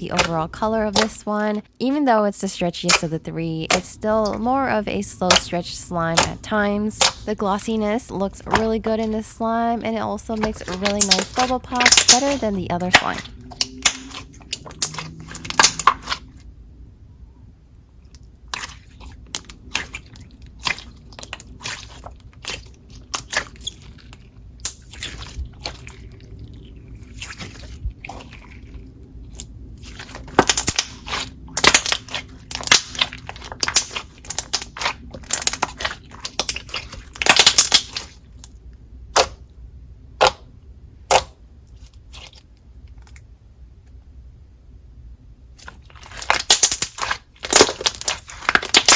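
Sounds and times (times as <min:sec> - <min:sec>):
slime clicking and popping: 0:07.0 - 0:07.3, 0:10.4 - 0:16.2, 0:29.4 - 0:38.2, 0:39.1 - 0:39.4, 0:40.2 - 0:40.4, 0:41.1 - 0:41.3, 0:46.0 - 0:48.9.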